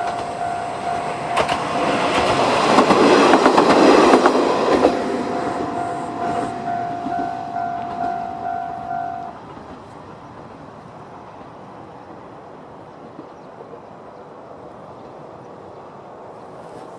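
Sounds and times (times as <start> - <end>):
level-crossing bell dinging: 0.0 - 9.4
diesel railcar rumble: 0.0 - 16.8.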